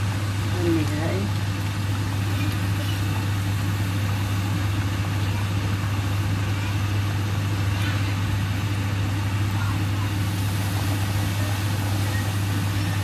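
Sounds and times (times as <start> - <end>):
low mechanical hum: 0.0 - 13.0.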